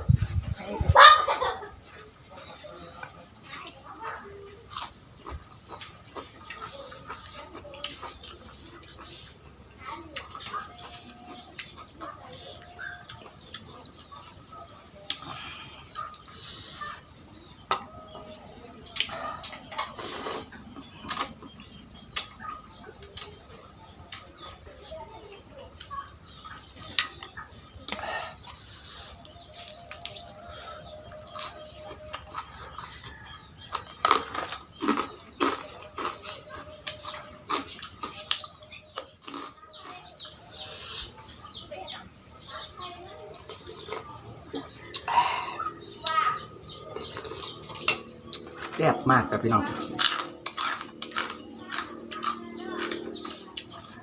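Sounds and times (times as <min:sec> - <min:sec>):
small birds chirping: 0:00.0 - 0:54.0
person eating crunchy food: 0:04.7 - 0:09.4, 0:18.9 - 0:21.6, 0:25.7 - 0:41.4, 0:43.4 - 0:48.8, 0:49.5 - 0:54.0
slurping noodle soup: 0:19.9 - 0:20.5.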